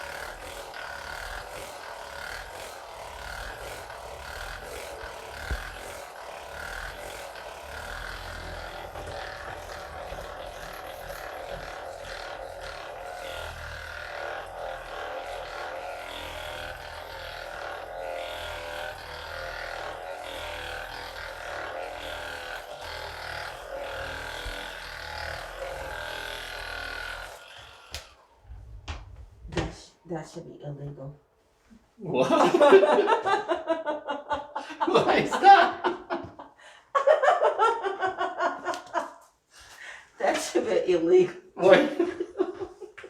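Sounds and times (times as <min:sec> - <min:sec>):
electric massage device droning: 0:00.0 - 0:29.3.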